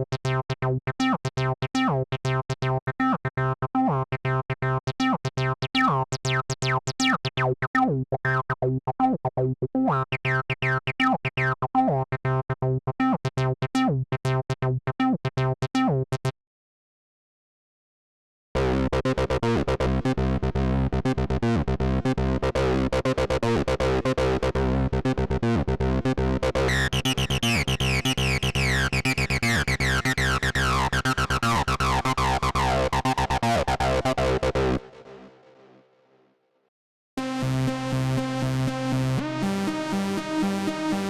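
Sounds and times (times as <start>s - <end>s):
acid bass synth pattern: 18.6s - 35.4s, 37.2s - 41.0s.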